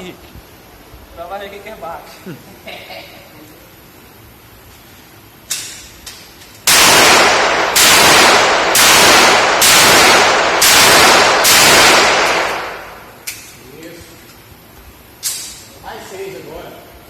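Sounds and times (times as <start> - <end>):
revolver gunshots: 6.6 - 13.2.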